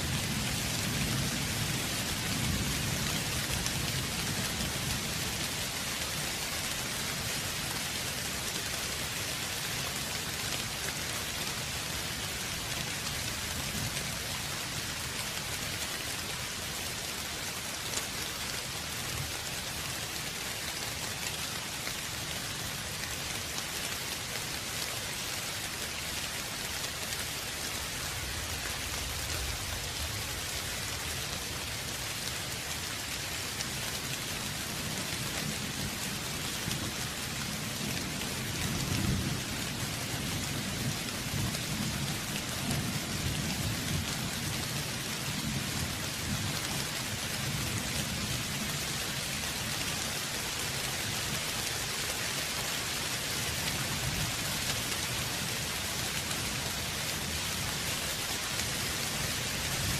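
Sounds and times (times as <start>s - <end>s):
steady rain hissing: 0.0s - 59.9s.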